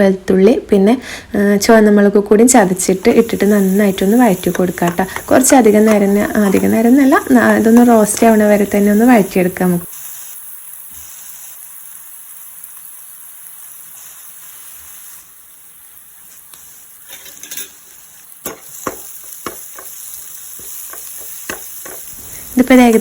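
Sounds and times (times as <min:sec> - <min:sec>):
aromatics sizzling in hot oil: 0:02.3 - 0:23.0
spatula scraping a pan: 0:16.5 - 0:23.0.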